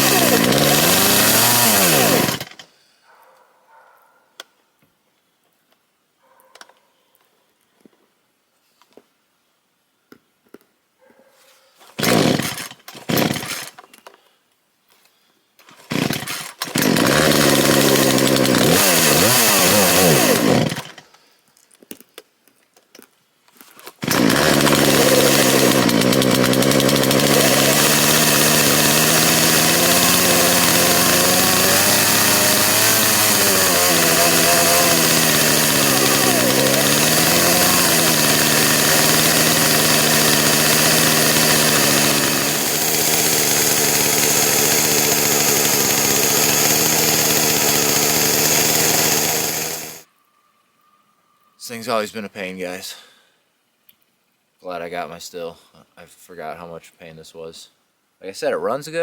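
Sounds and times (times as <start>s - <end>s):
chainsaw starting and revving: 0.0s - 2.7s, 12.0s - 13.8s, 15.7s - 21.1s, 23.9s - 50.1s.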